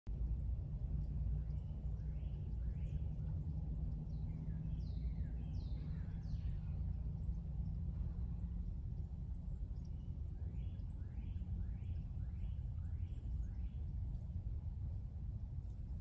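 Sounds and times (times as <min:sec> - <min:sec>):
steady low rumble: 0:00.1 - 0:16.0.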